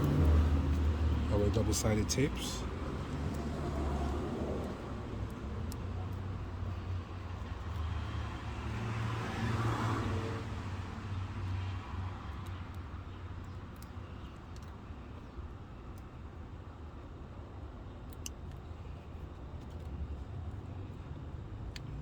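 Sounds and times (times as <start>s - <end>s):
motor vehicle rumble: 0.0s - 22.0s
faint small clicks: 12.2s - 16.1s, 18.0s - 21.0s, 21.6s - 22.0s.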